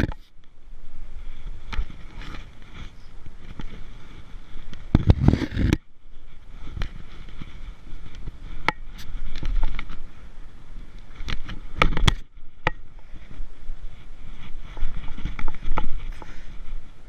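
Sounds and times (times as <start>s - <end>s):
wind rumble on microphone: 0.0s - 17.0s
sharp knocks clicks and scrapes: 4.7s - 5.8s, 14.7s - 16.4s.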